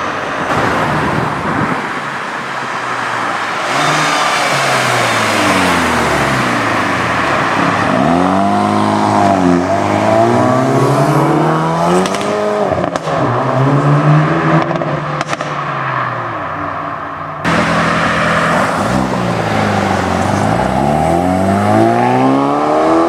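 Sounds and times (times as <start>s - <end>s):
car engine revving: 0.1s - 23.0s
sharp exhaust pops: 0.4s - 2.4s, 11.9s - 13.2s, 14.6s - 15.8s.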